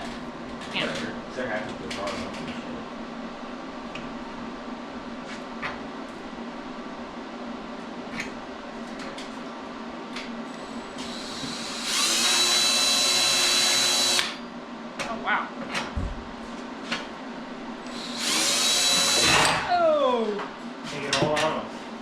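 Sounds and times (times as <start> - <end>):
electric drill whining: 11.0 - 14.4, 17.9 - 19.6.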